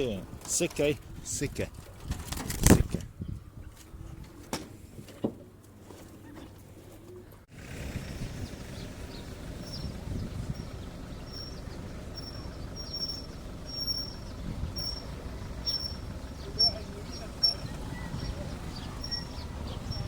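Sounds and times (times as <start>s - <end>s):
wind rumble on microphone: 0.0s - 5.1s, 7.6s - 20.0s
bird chirping: 8.2s - 20.0s.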